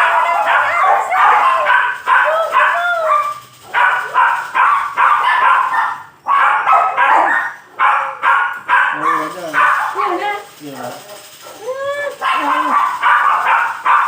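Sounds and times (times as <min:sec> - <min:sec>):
dog whining and yelping: 0:00.0 - 0:08.3, 0:11.1 - 0:14.0.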